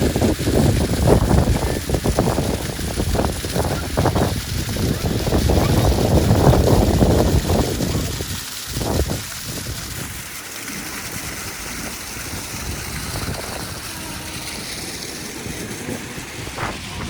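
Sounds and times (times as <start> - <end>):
wind buffeting microphone: 0.0 - 10.3, 11.1 - 17.0
surf washing: 9.6 - 17.0.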